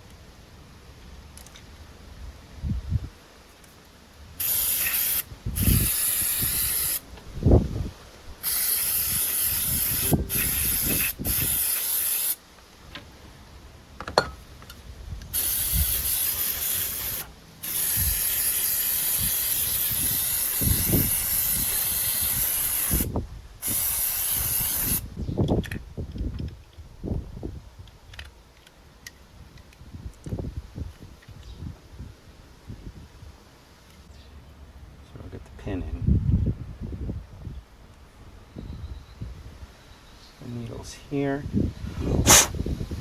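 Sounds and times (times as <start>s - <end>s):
aerosol spray hissing: 4.4s - 7.0s, 8.4s - 12.4s, 15.3s - 25.1s, 42.2s - 42.6s.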